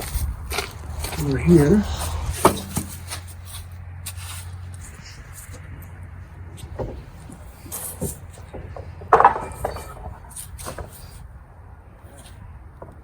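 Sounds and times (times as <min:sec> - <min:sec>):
wood knocking and clattering: 0:06.6 - 0:11.2, 0:12.7 - 0:13.0.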